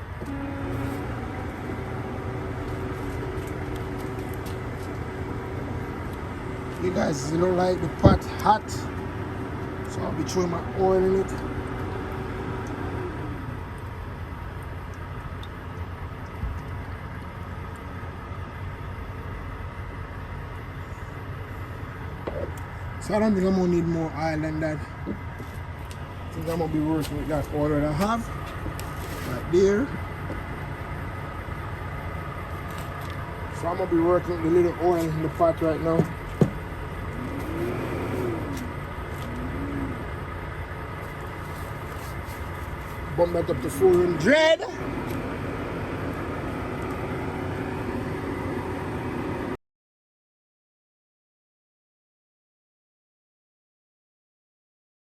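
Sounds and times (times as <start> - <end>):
faint rising and falling tone: 0.0 - 14.0, 36.6 - 42.1
low engine rumble: 0.0 - 49.6.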